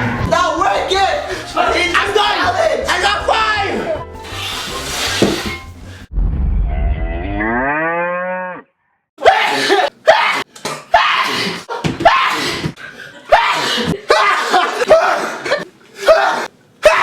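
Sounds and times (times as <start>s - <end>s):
cow mooing: 7.3s - 8.7s.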